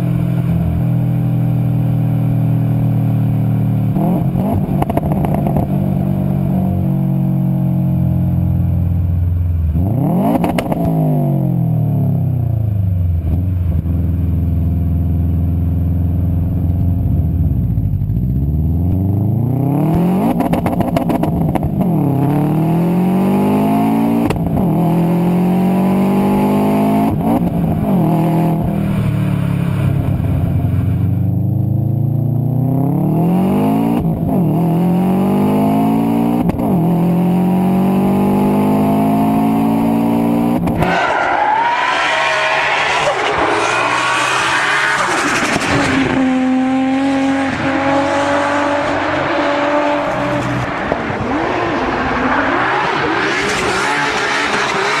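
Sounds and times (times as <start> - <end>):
turbocharged car engine revving: 9.7 - 12.2, 17.8 - 29.4, 31.3 - 55.0.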